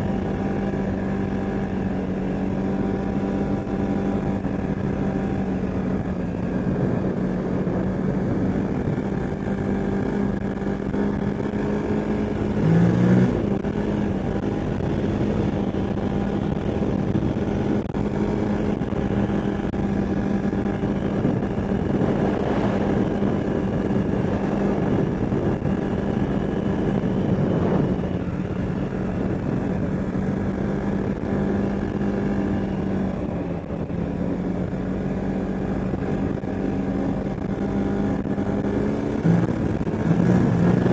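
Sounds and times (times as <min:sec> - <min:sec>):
atv engine running: 0:00.0 - 0:40.9.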